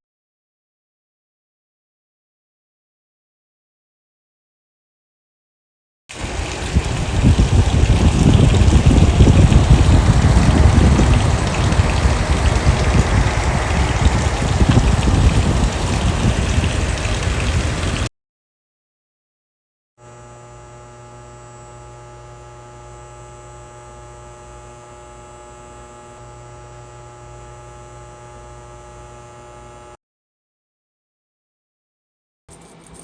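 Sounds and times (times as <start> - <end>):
loud rain-like hiss: 6.1 - 18.1
electrical hum: 6.2 - 18.1, 20.0 - 30.0.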